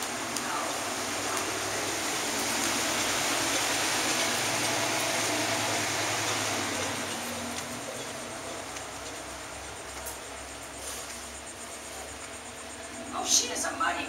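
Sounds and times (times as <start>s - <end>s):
steady rushing noise: 0.0s - 8.0s.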